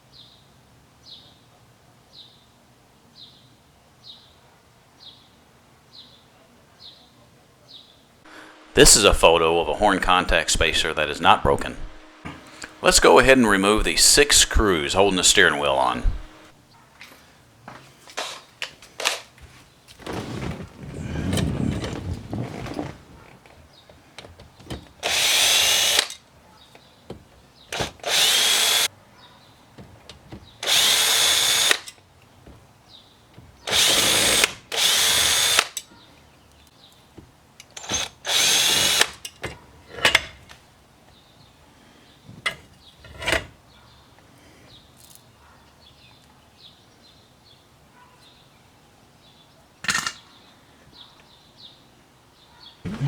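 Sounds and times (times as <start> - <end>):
power driver motor whine: 8.3 - 16.5.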